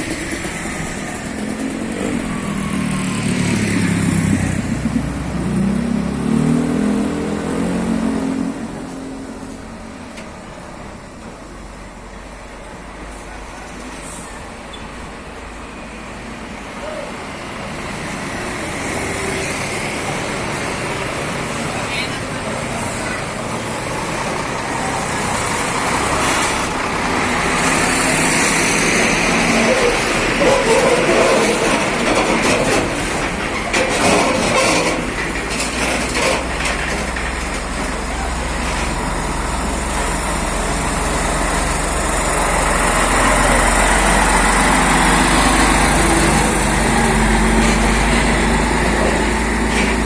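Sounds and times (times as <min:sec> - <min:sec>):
truck diesel engine running: 0:00.0 - 0:06.2, 0:19.9 - 0:50.0
vehicle engine pulling past: 0:00.0 - 0:08.6
road noise: 0:00.0 - 0:50.0
background rumble: 0:00.2 - 0:05.9.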